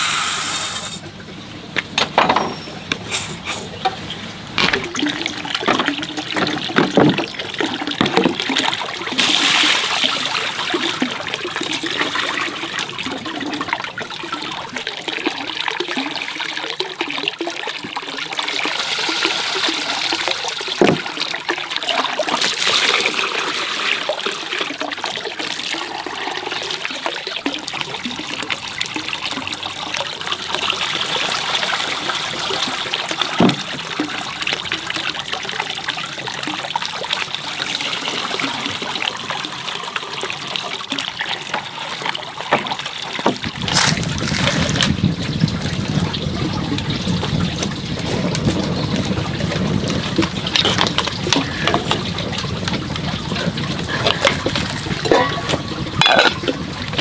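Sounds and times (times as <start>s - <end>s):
water splashing and trickling: 0.0s - 57.0s
knocks and clicks: 1.8s - 3.0s, 3.8s - 7.4s, 8.0s - 8.5s.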